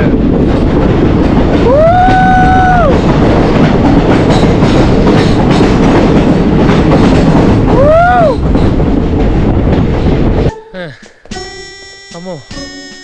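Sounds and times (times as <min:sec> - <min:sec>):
train wheels clattering on rails: 0:00.0 - 0:13.0
high pitched tone: 0:10.4 - 0:13.0.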